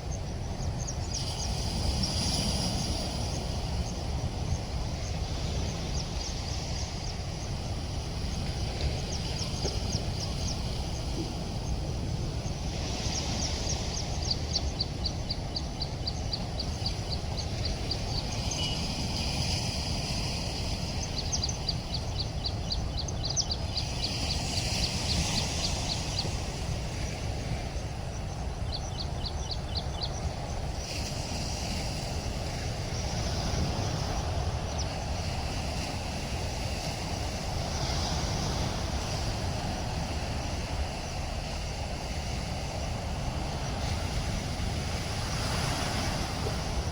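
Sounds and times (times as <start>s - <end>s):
rushing floodwater roar: 29.0s - 46.9s.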